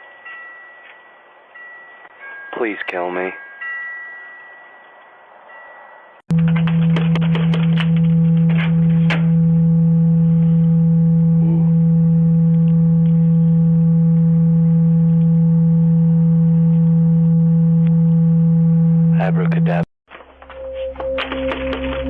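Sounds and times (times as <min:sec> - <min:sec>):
steady low buzzing tone: 0:06.3 - 0:19.9.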